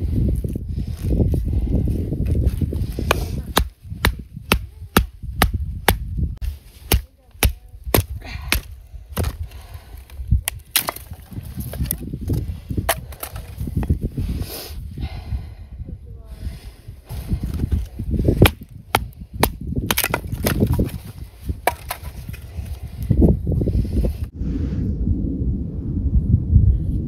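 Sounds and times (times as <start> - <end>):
wind rumble on microphone: 0.0 - 27.0.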